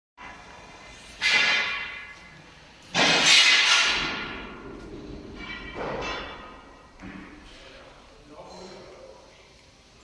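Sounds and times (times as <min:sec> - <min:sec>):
metallic clangs of wire machine: 0:02.9 - 0:07.4.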